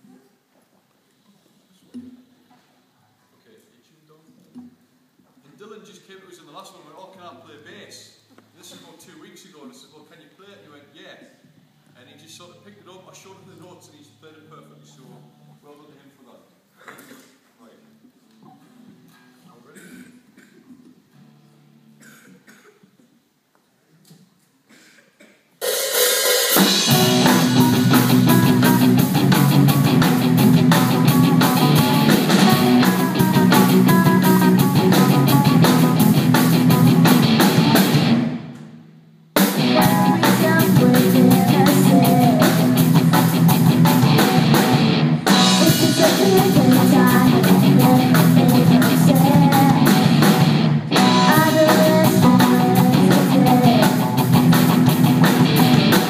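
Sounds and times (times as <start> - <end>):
rock band playing live: 25.6 - 38.6, 39.4 - 56.0
person singing: 31.0 - 35.9, 39.6 - 43.0, 45.3 - 50.2, 51.0 - 54.2.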